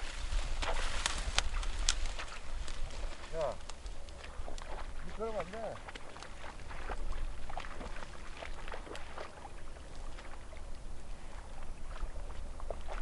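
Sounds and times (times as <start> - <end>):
stream water splashing: 0.0 - 13.0.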